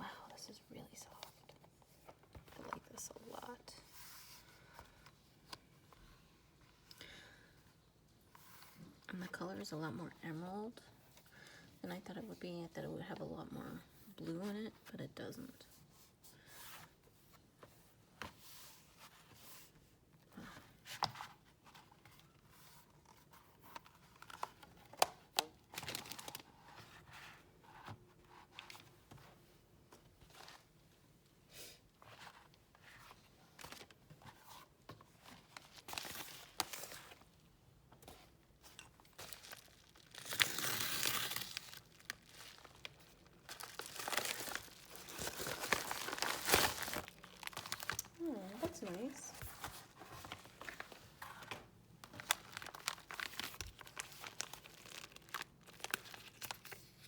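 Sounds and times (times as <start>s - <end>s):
packaging rustling and crinkling: 21.4s - 27.4s, 32.1s - 37.5s, 38.1s - 57.0s.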